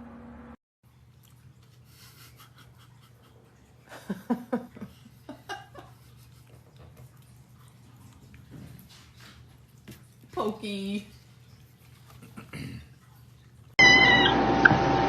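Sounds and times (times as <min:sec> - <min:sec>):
person laughing: 0:01.9 - 0:06.1.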